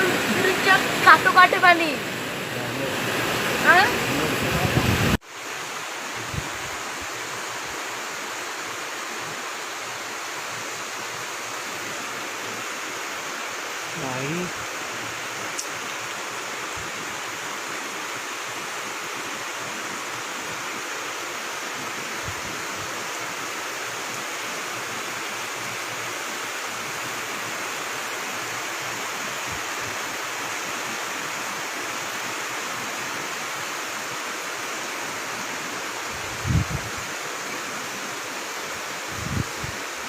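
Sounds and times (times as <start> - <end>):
floodwater rushing: 0.0 - 40.0.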